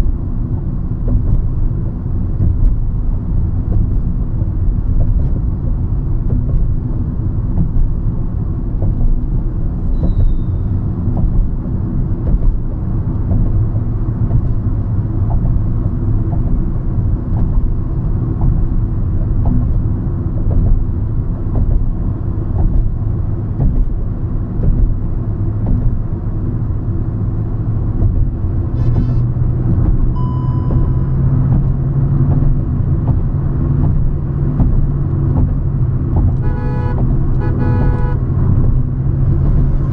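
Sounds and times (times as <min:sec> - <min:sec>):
car engine and road rumble: 0:00.0 - 0:39.9
short high beep: 0:30.2 - 0:31.2.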